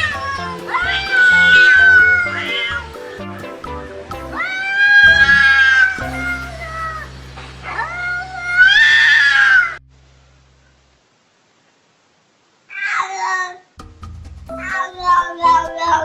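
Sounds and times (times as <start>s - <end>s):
low steady hum: 0.0s - 12.4s.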